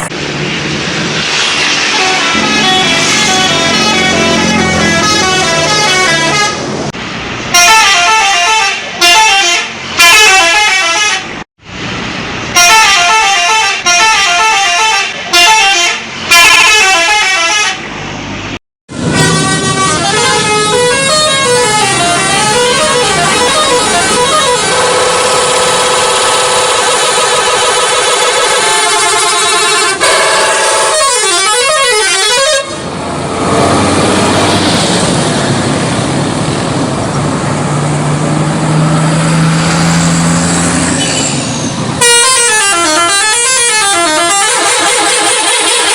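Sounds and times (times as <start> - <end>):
multi-tone musical bus horns: 1.8 - 6.9, 7.5 - 11.4, 12.5 - 18.0, 18.9 - 33.0, 39.4 - 45.9.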